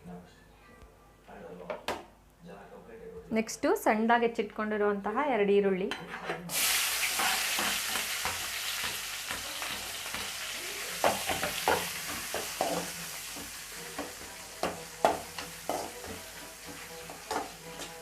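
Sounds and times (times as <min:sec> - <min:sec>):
onions sizzling in hot oil: 0:06.5 - 0:18.0
spoon knocking against pan: 0:11.0 - 0:18.0.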